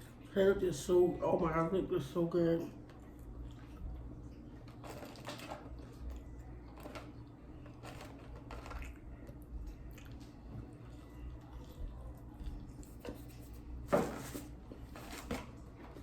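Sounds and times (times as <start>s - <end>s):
faint low hum: 0.0s - 16.0s
person chewing food: 2.9s - 5.2s, 5.8s - 13.5s.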